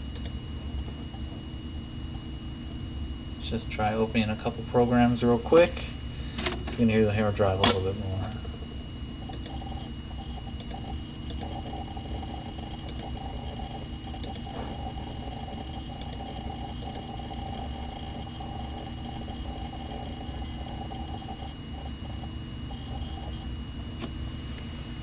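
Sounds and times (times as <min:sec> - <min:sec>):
computer fan whir: 0:00.0 - 0:25.0
high whine: 0:00.0 - 0:25.0
hard drive clicks: 0:07.6 - 0:24.2.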